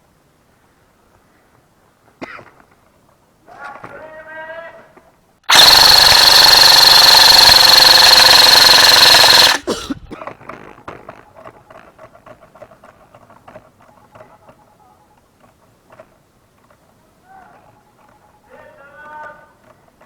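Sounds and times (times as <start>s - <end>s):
toy gun full-auto burst: 5.5s - 9.7s.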